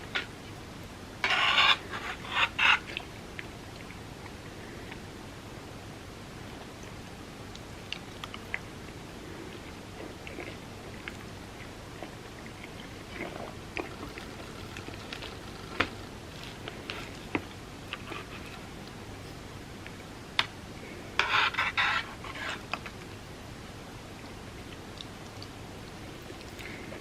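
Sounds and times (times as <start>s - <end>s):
quiet chewing: 6.5s - 20.1s, 24.2s - 27.0s.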